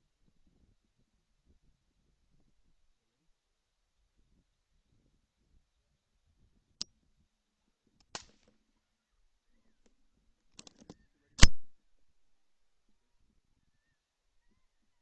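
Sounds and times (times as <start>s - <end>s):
rifle shot: 11.4s - 11.7s.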